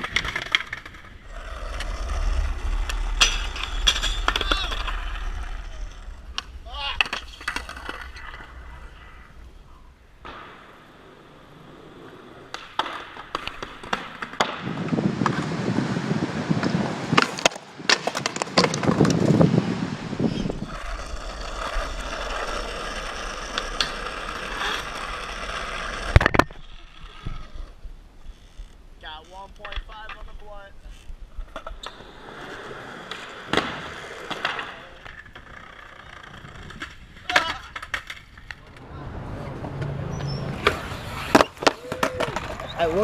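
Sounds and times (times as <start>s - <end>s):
skateboard clacks: 0.0s - 1.9s, 10.2s - 15.6s, 16.6s - 19.4s, 31.4s - 38.9s, 39.7s - 43.0s
skateboard wheels rolling on pavement: 0.0s - 43.0s.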